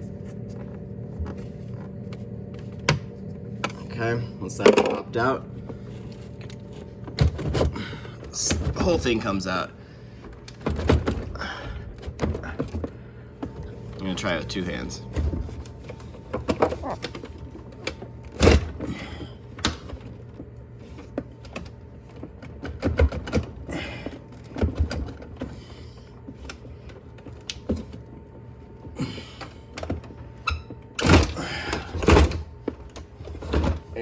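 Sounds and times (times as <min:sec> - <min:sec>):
plastic parts knocking and clicking: 0:04.6 - 0:05.0.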